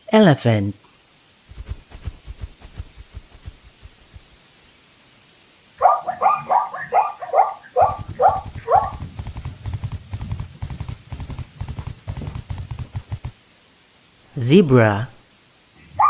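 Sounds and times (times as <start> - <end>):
animal barking calls: 5.8 - 13.3.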